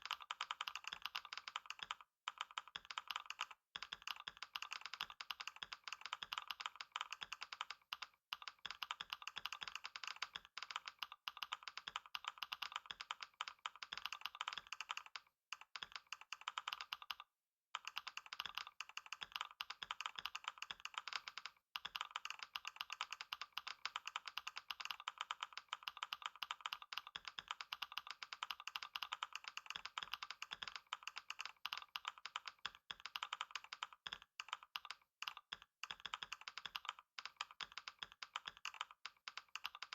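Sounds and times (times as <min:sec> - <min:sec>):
fast typing on keyboard: 0:00.0 - 0:39.9.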